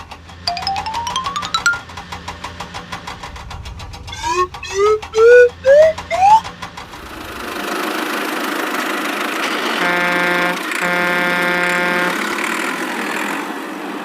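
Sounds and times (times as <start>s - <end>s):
puttering engine-like ticking: 1.8s - 13.5s
low hum: 3.1s - 7.6s
whoosh: 3.1s - 7.6s
quick rising chirps: 3.4s - 7.1s.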